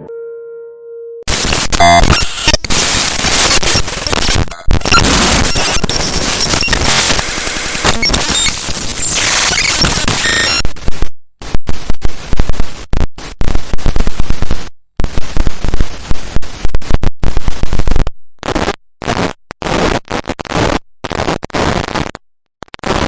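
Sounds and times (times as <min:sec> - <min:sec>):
digital glitch static bursts: 0:01.3 - 0:10.6.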